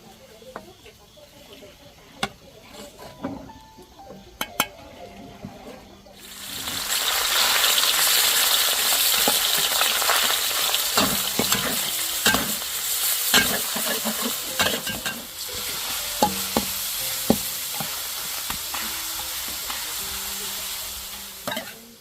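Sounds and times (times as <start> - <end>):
food sizzling in oil: 6.1 - 22.0
utensil scraping a pan: 8.9 - 22.0.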